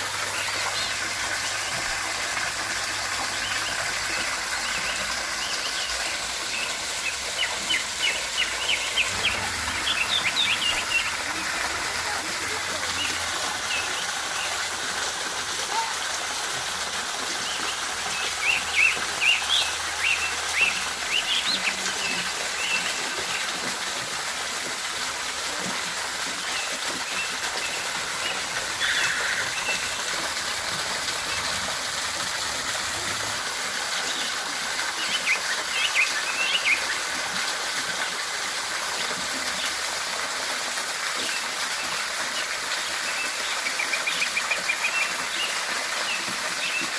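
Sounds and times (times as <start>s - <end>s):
waterfall rushing: 0.0s - 46.9s
birds chirping: 3.2s - 14.6s, 26.6s - 32.0s.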